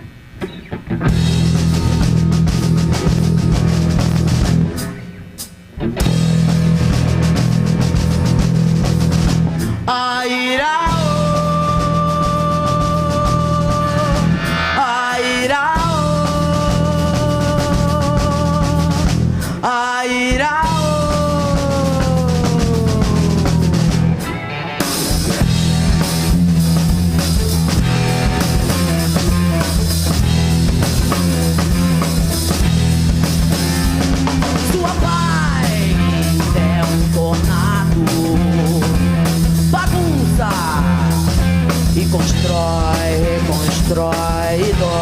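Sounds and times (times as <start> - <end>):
electric bass: 0.0 - 10.1, 10.8 - 19.7, 20.3 - 45.0
drum kit: 0.0 - 45.0
electric guitars: 0.0 - 45.0.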